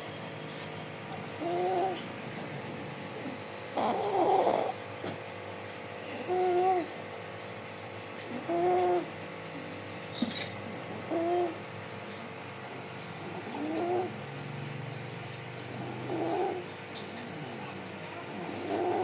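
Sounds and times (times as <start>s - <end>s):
baby snoring: 1.4s - 2.0s, 3.2s - 4.8s, 6.1s - 6.9s, 13.2s - 14.2s, 15.8s - 16.6s, 18.3s - 19.0s.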